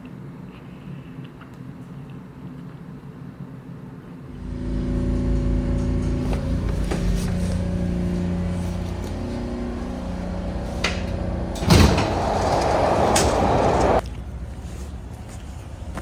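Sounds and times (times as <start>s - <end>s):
vehicle motor hum: 4.3s - 14.0s
heavy thump: 5.2s - 14.0s
loud rushing noise: 7.2s - 14.0s.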